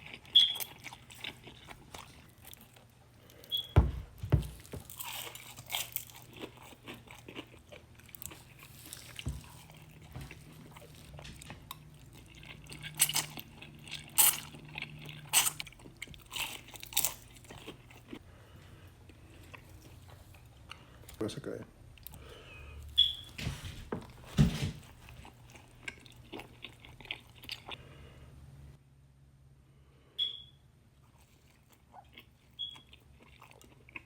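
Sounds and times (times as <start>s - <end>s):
crunchy biting and chewing: 0.0s - 3.6s, 4.5s - 18.2s, 24.8s - 27.9s, 31.0s - 34.0s.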